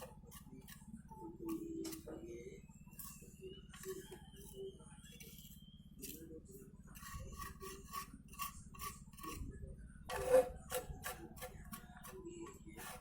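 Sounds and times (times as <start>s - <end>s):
hand tool scraping: 7.0s - 9.5s, 10.1s - 13.0s.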